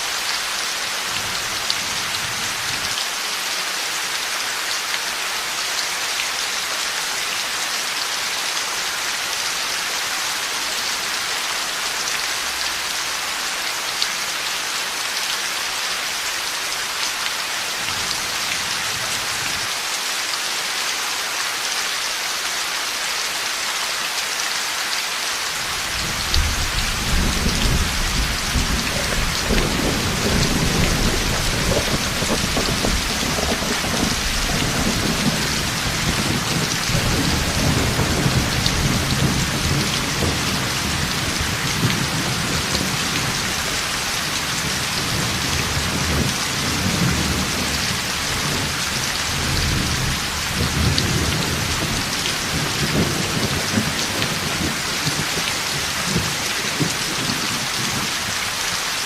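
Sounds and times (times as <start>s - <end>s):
heavy rain: 0.0s - 59.0s
thunder rumbling: 25.7s - 43.1s.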